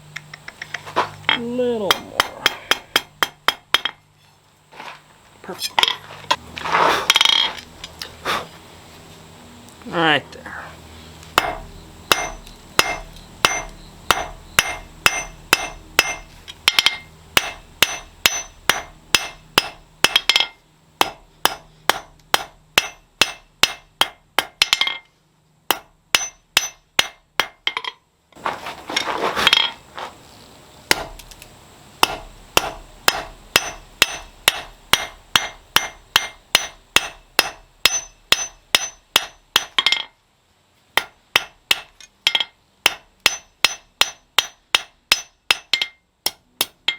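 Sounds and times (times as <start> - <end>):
hammer striking anvil: 1.3 - 4.0, 11.4 - 25.1, 25.7 - 28.0, 32.0 - 40.1, 41.0 - 46.9.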